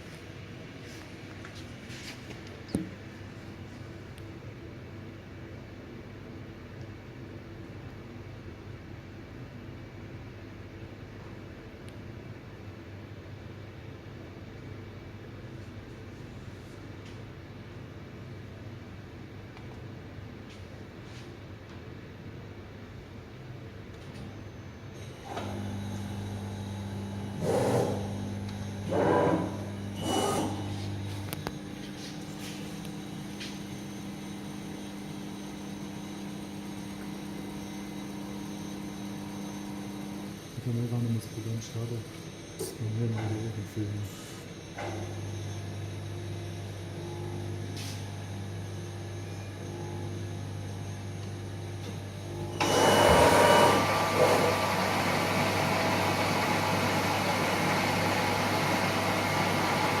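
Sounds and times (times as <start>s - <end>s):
milling machine humming: 24.9s - 60.0s.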